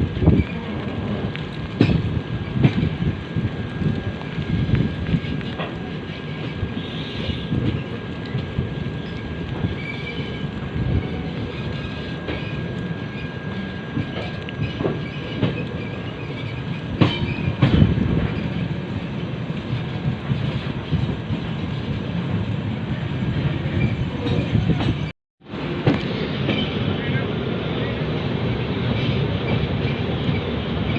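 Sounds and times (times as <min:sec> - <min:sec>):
wheels clacking over rail joints: 0:00.0 - 0:03.2, 0:04.0 - 0:22.4
train wheels rumbling: 0:00.0 - 0:30.9.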